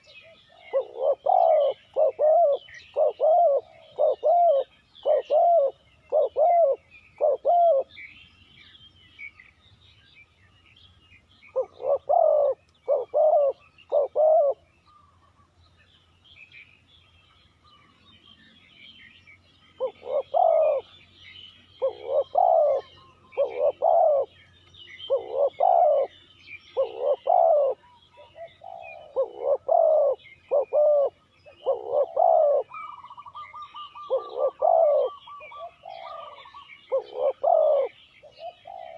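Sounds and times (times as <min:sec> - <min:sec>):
dove cooing: 0:00.0 - 0:08.0, 0:11.5 - 0:14.6, 0:19.8 - 0:21.0, 0:21.7 - 0:24.4, 0:25.0 - 0:38.9
small birds chirping: 0:00.0 - 0:38.9.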